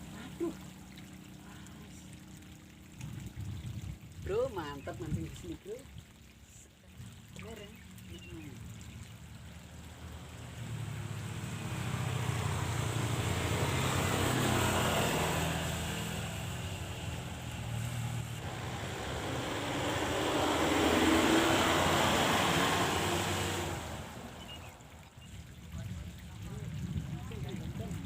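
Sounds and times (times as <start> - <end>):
engine humming: 0.0 - 28.0.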